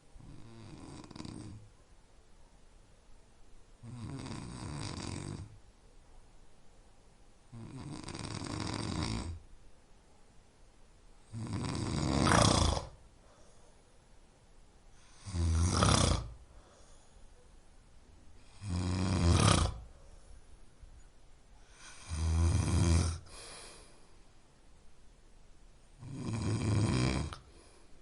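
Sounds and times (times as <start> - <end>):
person snoring: 0.2 - 1.7, 3.8 - 5.6, 7.5 - 9.4, 11.3 - 13.0, 15.0 - 16.5, 18.4 - 19.9, 21.6 - 24.0, 26.0 - 27.8.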